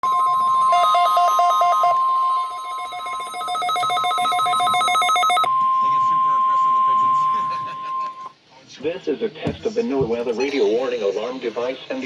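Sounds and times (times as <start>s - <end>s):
steady alarm tone: 0.0s - 8.3s.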